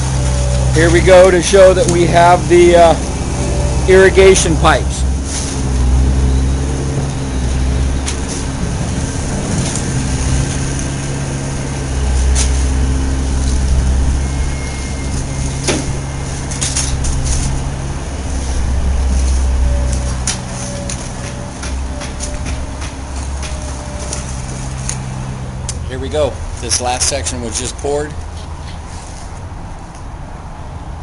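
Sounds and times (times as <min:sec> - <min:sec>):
vehicle engine running: 0:00.0 - 0:29.9
sharp clicks and knocks: 0:19.9 - 0:25.8.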